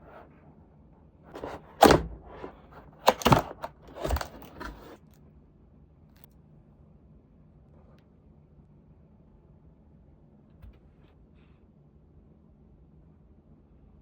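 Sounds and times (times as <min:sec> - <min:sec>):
cardboard box thuds and knocks: 0:01.4 - 0:05.0
packaging rustling: 0:01.4 - 0:05.0.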